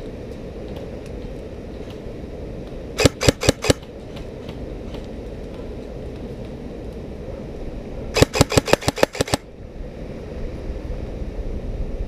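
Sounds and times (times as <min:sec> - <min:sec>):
airsoft rifle shots: 0:03.0 - 0:03.9, 0:08.2 - 0:09.4.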